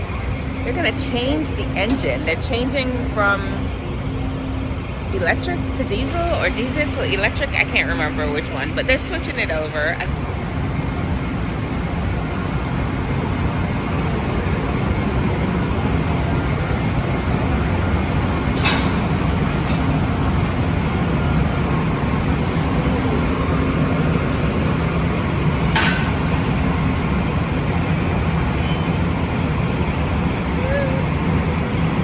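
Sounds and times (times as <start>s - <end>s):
train idling rumble: 0.0s - 32.0s
sharp metallic clanks: 25.4s - 27.3s.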